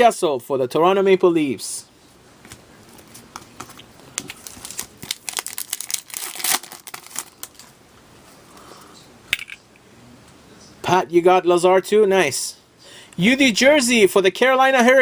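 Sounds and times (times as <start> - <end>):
wrappers crinkling: 2.9 - 7.7.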